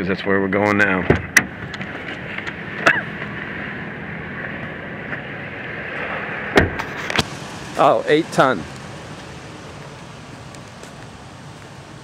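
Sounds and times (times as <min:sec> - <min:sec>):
steady rushing noise: 0:00.7 - 0:12.0.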